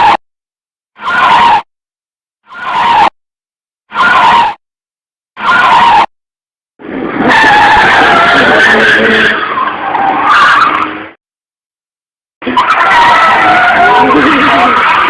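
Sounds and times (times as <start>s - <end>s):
tyres screeching: 7.2s - 11.0s, 12.4s - 15.0s.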